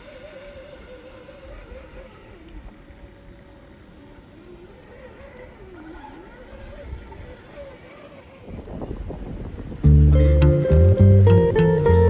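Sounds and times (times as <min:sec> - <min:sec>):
low rumbling noise: 0:09.8 - 0:12.0.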